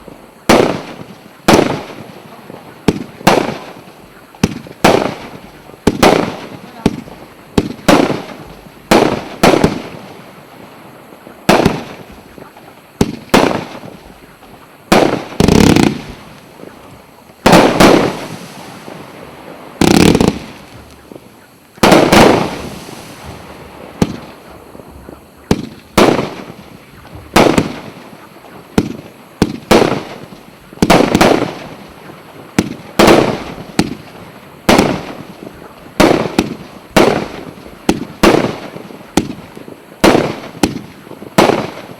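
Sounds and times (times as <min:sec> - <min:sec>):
firework cake bangs: 0:11.5 - 0:14.3, 0:17.4 - 0:18.9, 0:19.8 - 0:21.0, 0:21.8 - 0:31.8, 0:34.7 - 0:41.9.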